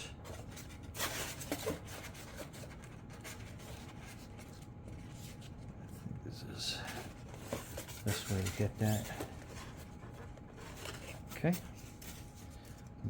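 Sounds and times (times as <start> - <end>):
faint rubbing and scratching: 6.8 - 12.8.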